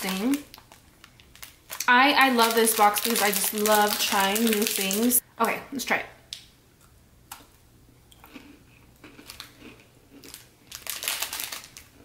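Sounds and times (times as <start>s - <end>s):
biscuit crunching while chewed: 8.1s - 12.0s.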